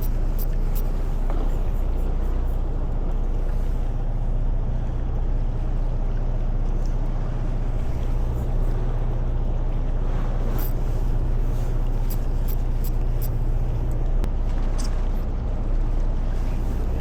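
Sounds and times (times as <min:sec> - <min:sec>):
boat engine humming: 0:00.0 - 0:17.0.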